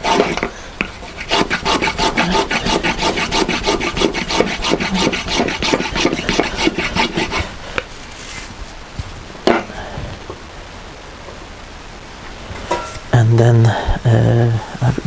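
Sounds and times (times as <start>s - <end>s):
block plane shaving wood: 0.0s - 7.6s.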